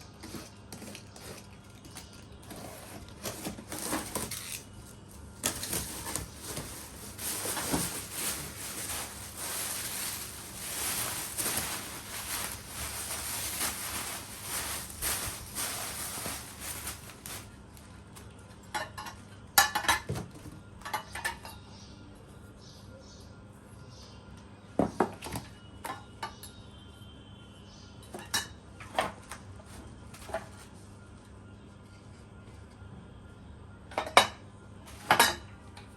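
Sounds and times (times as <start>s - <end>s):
rustling and handling noises: 0.0s - 19.2s, 28.8s - 32.8s.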